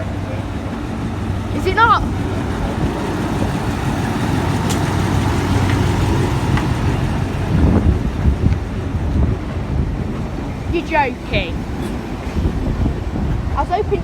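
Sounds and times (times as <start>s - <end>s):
train diesel engine rumbling: 0.0s - 14.0s.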